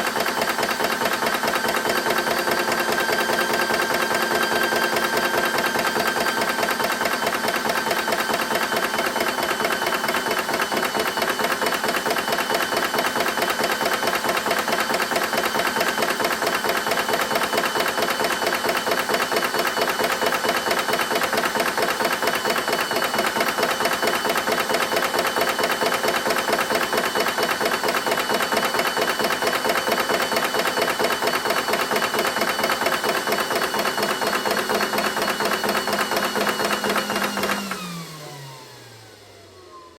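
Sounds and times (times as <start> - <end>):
air compressor running: 0.0 - 40.0.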